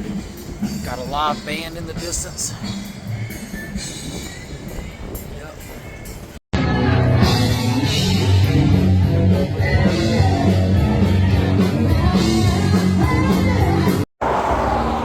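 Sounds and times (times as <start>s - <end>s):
drums: 0.0s - 14.1s
electric guitar: 6.6s - 14.0s.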